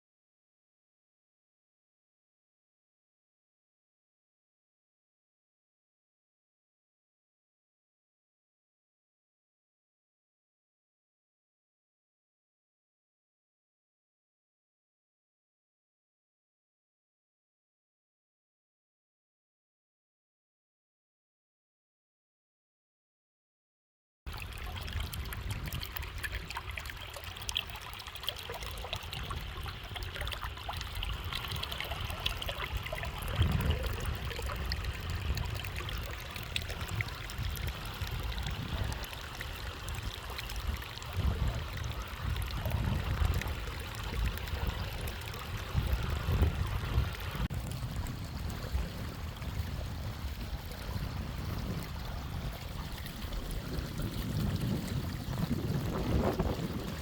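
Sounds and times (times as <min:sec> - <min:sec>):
rainwater trickling: 0:24.3 - 0:57.0
wind buffeting microphone: 0:24.4 - 0:26.6, 0:30.8 - 0:39.1, 0:39.9 - 0:57.0.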